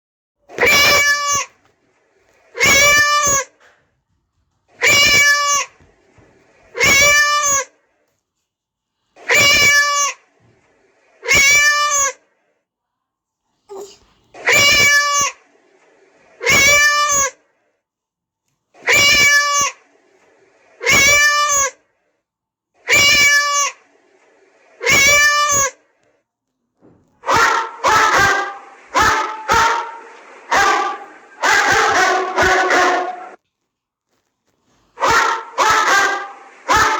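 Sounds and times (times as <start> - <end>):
quick short animal calls: 0.5 - 1.6, 2.5 - 3.7, 4.8 - 5.8, 6.8 - 7.8, 9.2 - 10.3, 11.2 - 12.2, 13.7 - 15.5, 16.4 - 17.4, 18.8 - 19.9, 20.7 - 21.8, 22.8 - 23.9, 24.7 - 25.8, 27.2 - 33.4, 35.0 - 36.9
wavering animal call ringtone: 0.7 - 1.5, 2.6 - 3.5, 4.8 - 5.7, 6.8 - 7.7, 9.3 - 10.2, 11.3 - 12.2, 14.5 - 15.4, 16.4 - 17.4, 18.9 - 19.8, 20.8 - 21.8, 22.9 - 23.8, 24.8 - 25.8.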